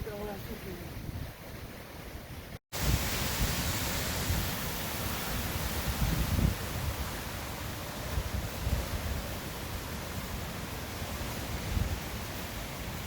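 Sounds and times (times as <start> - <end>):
wind gusts buffeting microphone: 0.0 - 13.0
heavy rain: 2.7 - 13.0.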